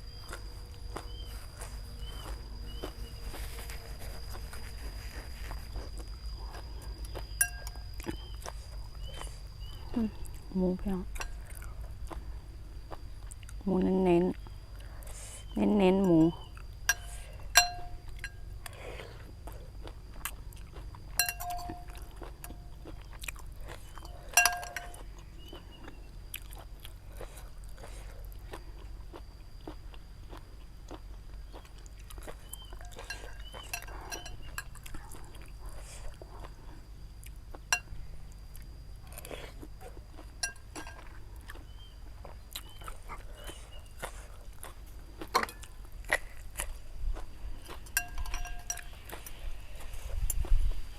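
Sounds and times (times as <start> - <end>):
chewing and crunching: 0.0 - 50.9
spoon clinking against a bowl: 7.4 - 7.8, 16.9 - 18.4, 21.2 - 22.6, 24.0 - 25.0, 32.7 - 34.9, 40.4 - 41.1, 47.8 - 49.2.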